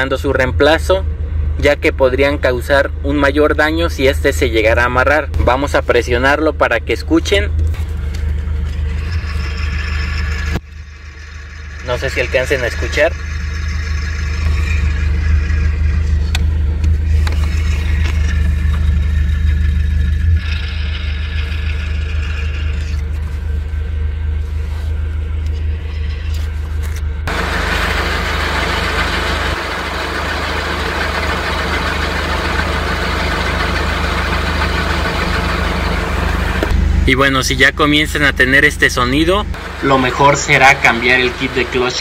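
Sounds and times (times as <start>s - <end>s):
car engine running: 0.0s - 42.0s
clutch bearing noise: 7.5s - 24.3s, 25.2s - 36.8s.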